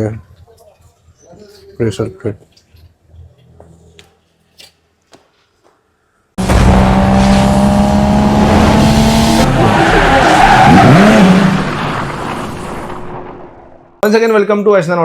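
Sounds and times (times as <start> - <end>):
car engine revving: 6.4 - 13.6
tyres screeching: 9.5 - 12.6.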